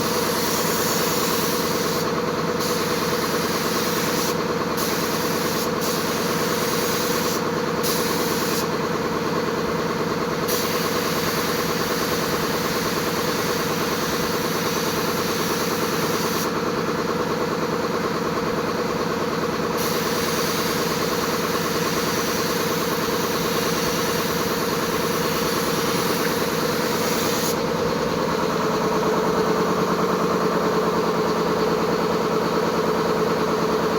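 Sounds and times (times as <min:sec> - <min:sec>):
spray gun hissing: 0:00.0 - 0:08.8, 0:10.5 - 0:16.6, 0:19.8 - 0:29.7
air compressor drone: 0:00.0 - 0:33.9.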